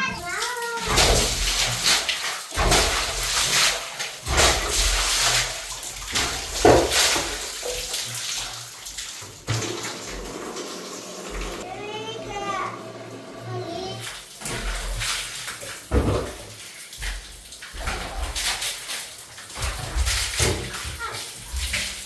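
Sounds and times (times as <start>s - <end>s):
water splashing and pouring: 0.0s - 22.0s.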